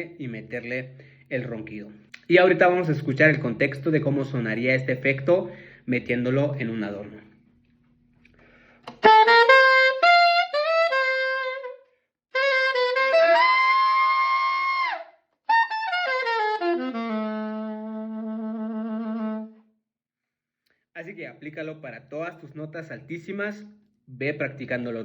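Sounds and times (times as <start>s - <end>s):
saxophone phrase: 8.9s - 19.6s.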